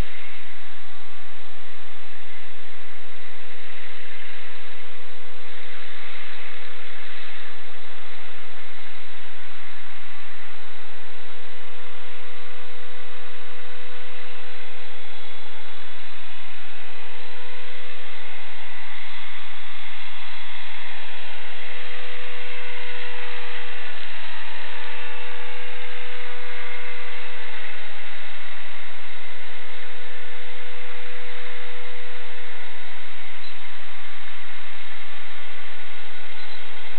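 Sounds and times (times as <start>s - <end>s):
electric motor whine: 0.0s - 36.9s.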